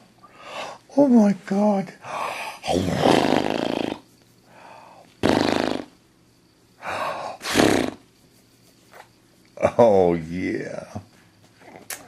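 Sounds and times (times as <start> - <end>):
person making breathy vocal sounds: 2.1 - 4.0.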